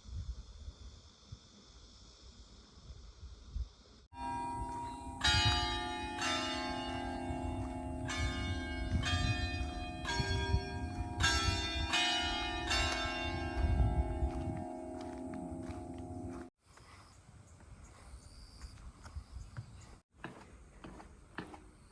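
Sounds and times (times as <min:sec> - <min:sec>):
faint insect-like hiss: 0:00.0 - 0:04.1
church bells ringing: 0:04.2 - 0:16.5.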